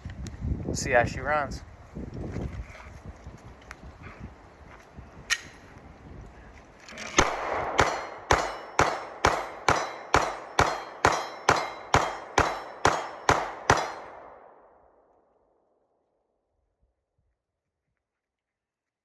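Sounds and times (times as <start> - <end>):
sharp click: 5.3 - 5.6
pistol shots: 7.2 - 14.7.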